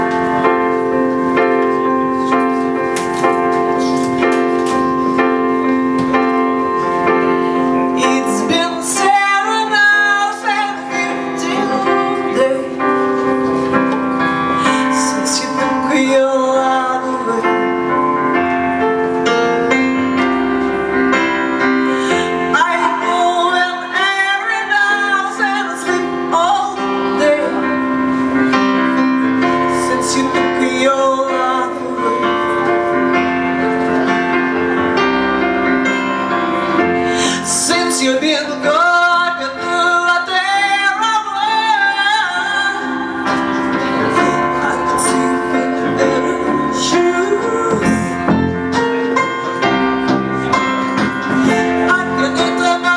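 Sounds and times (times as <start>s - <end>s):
piano chords: 0.0s - 52.9s
woman singing with vibrato: 7.5s - 18.5s, 21.4s - 28.3s, 29.4s - 33.0s, 36.8s - 49.2s, 51.3s - 52.9s.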